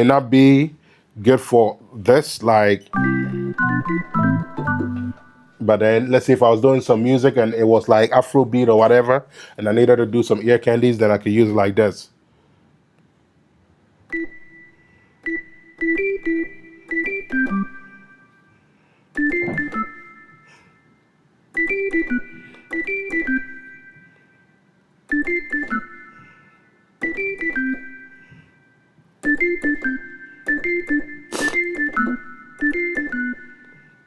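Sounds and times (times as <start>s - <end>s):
percussive synth organ notes: 3.0s - 6.2s, 15.3s - 18.2s, 19.2s - 20.4s, 21.6s - 23.9s, 25.1s - 26.2s, 27.0s - 28.3s, 29.2s - 34.0s.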